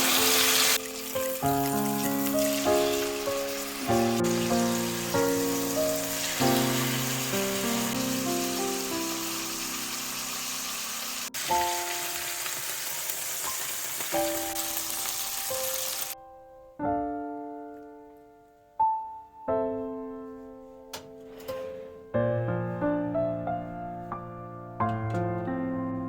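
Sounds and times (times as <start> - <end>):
meat sizzling in a frying pan: 0.0 - 16.2
piano music: 0.0 - 26.0.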